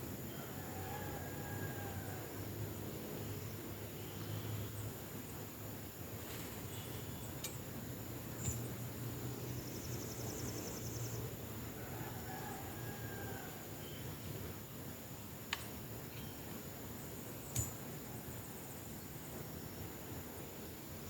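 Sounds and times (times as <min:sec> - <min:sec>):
distant rooster crowing: 0:00.3 - 0:02.8, 0:11.7 - 0:14.0.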